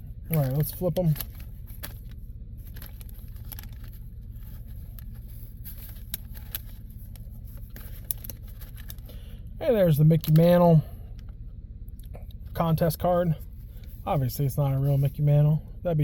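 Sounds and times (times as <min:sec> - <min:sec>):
truck cab low rumble: 0:00.0 - 0:16.0.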